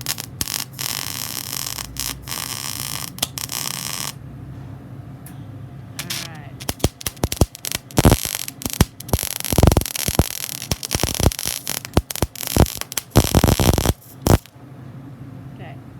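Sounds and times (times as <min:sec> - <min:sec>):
welding arc crackling and hissing: 0:00.0 - 0:04.2, 0:06.0 - 0:14.5.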